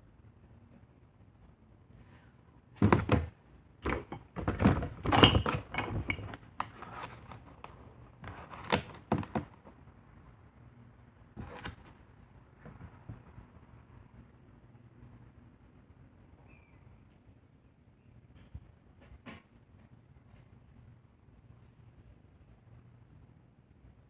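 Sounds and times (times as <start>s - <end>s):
knocks and clunks: 2.8s - 6.4s.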